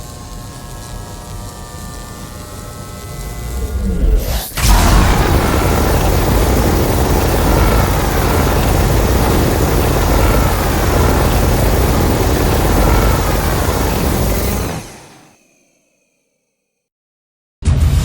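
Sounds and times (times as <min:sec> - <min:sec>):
monster rushing rumble: 0:03.8 - 0:15.2.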